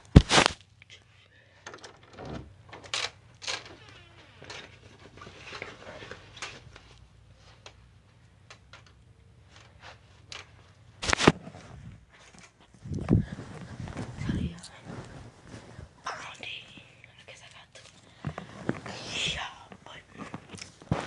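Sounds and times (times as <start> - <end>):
rustling: 9.4 - 16.9, 17.7 - 21.0.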